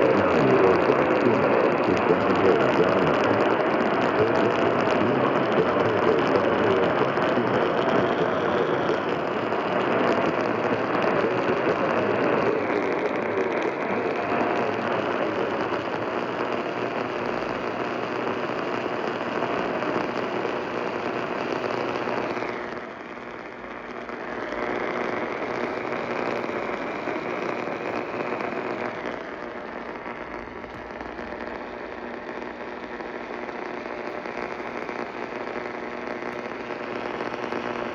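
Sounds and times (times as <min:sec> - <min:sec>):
radio static and hiss: 0:00.0 - 0:37.9.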